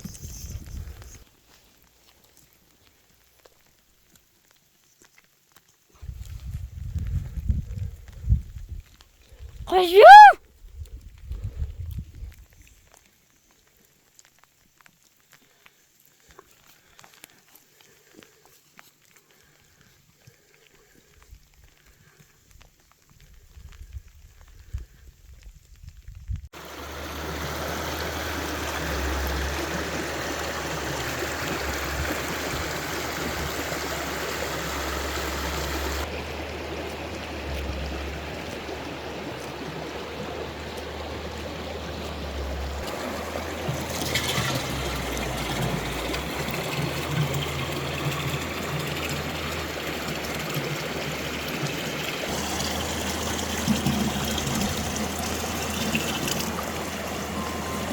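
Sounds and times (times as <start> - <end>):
water trickling: 26.6 - 57.9.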